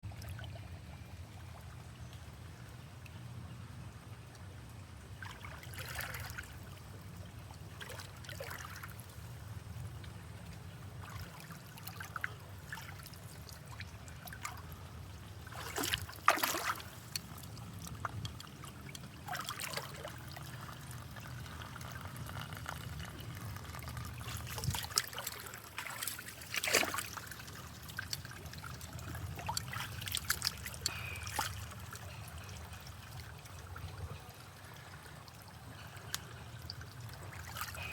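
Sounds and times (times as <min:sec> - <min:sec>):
water trickling and splashing: 0:00.0 - 0:37.9
loud water splashes: 0:24.2 - 0:27.3.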